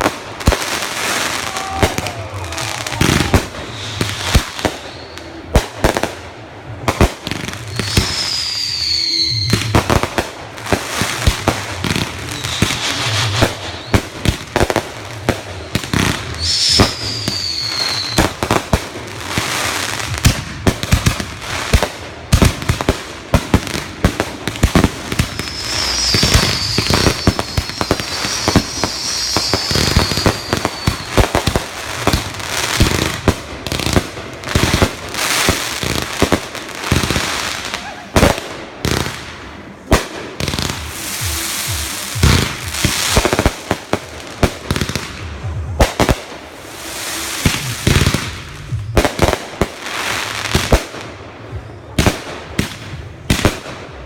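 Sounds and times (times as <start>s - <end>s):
fireworks bangs and crackling: 0.0s - 54.0s
firework whistles: 1.1s - 5.5s, 7.6s - 10.0s, 11.2s - 14.6s, 15.9s - 18.4s, 24.8s - 33.3s, 46.5s - 50.7s.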